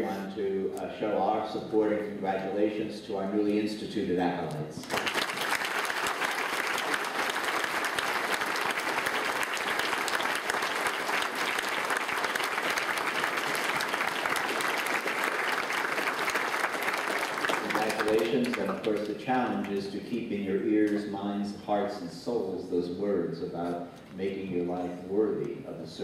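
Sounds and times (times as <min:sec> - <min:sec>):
congregation applauding: 0:04.8 - 0:19.8.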